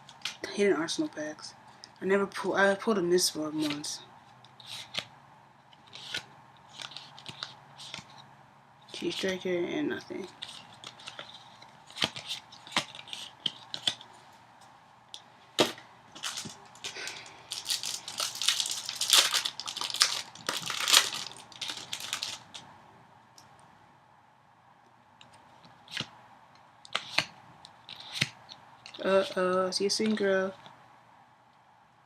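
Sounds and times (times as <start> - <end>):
foil wrapper crinkling and tearing: 16.2 - 22.6.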